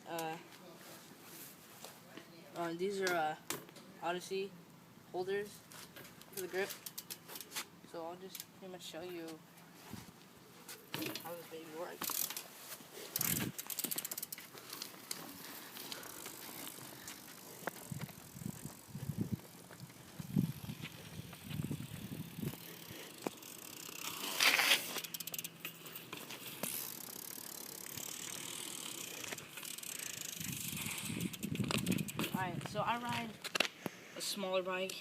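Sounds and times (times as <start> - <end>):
bike clicks and knocks: 10.9 - 11.4, 12.0 - 12.5, 13.1 - 33.7.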